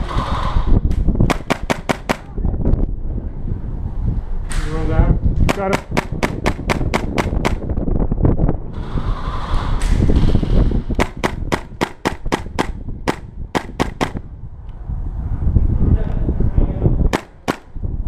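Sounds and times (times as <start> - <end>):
microphone handling rumble: 0.0 - 18.0
airsoft gun shots: 1.2 - 2.3, 5.5 - 7.7, 11.0 - 14.2, 17.1 - 17.8.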